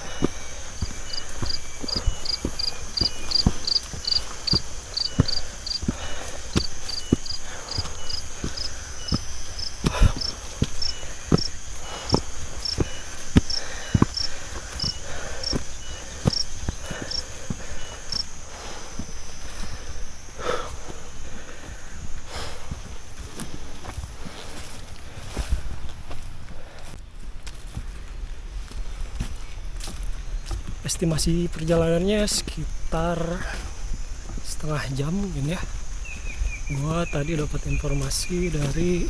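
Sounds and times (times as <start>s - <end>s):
high insect drone: 0.0s - 26.2s, 29.8s - 39.0s
insect chirping: 0.0s - 26.7s, 29.3s - 39.0s
footsteps on trail: 0.0s - 39.0s.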